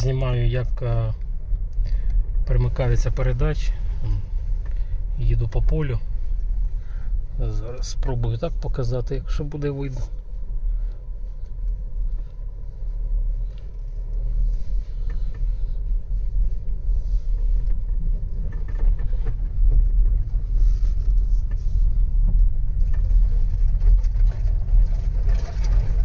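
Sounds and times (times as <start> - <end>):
engine and tyres rumbling: 0.0 - 26.0.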